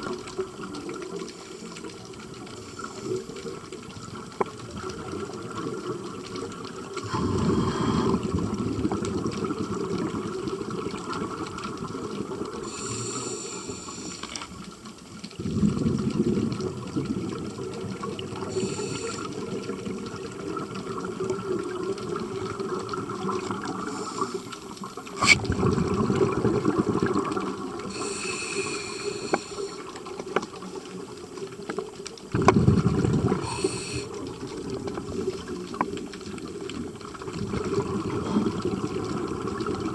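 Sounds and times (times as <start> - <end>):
exhaled bubbles underwater: 0.0 - 39.9
regulator inhale hiss: 7.0 - 8.4, 12.6 - 14.4, 18.4 - 19.4, 23.8 - 25.4, 27.9 - 29.9, 33.3 - 34.4.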